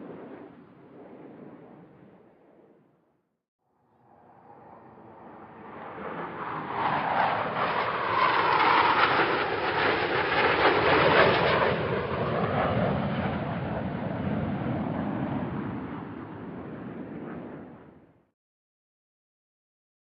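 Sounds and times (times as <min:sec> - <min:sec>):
jet passing by: 0:03.8 - 0:18.2.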